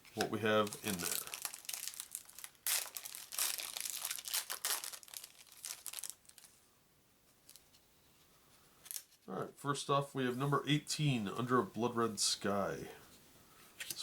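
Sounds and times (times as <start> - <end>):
wrapper tearing and crinkling: 0.6 - 6.5.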